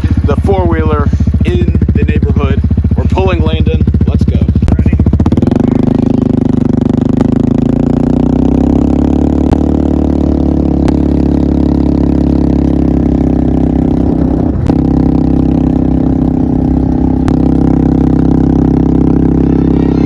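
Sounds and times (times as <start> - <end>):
atv engine running: 0.0 - 20.0.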